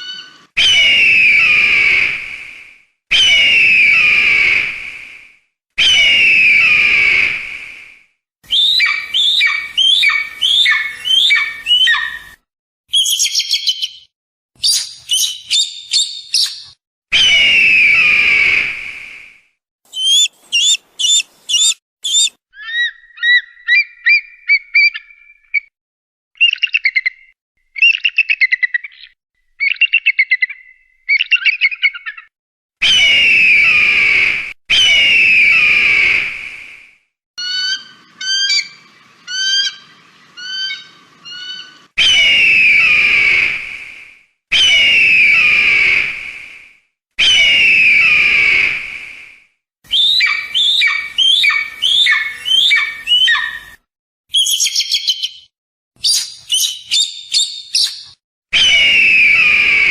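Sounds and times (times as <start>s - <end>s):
kite shrill whistling cries: 5.8s - 7.5s, 8.5s - 13.5s, 19.9s - 22.4s, 32.9s - 36.5s, 40.4s - 46.2s, 47.2s - 49.0s, 49.9s - 55.0s, 56.0s - 59.9s.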